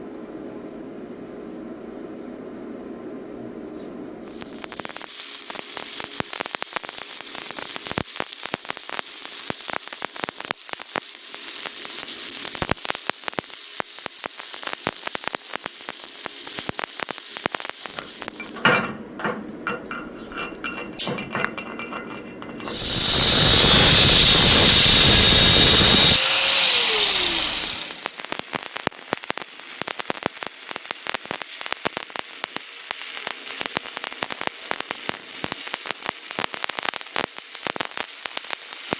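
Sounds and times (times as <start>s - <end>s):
welding arc crackling: 4.2s - 18.8s, 19.4s - 38.9s
angle grinder running: 22.6s - 28.1s.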